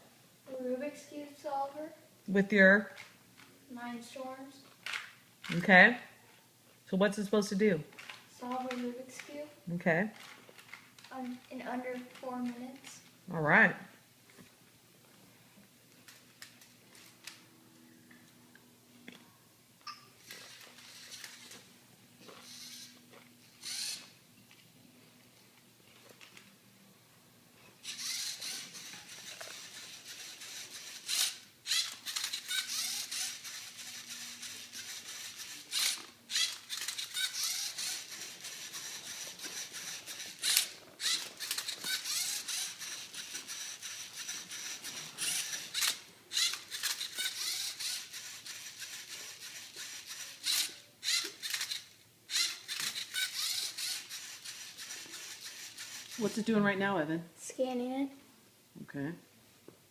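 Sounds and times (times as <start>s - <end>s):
robot motors whirring: 22.3s - 23.0s, 23.6s - 24.1s, 27.8s - 56.2s.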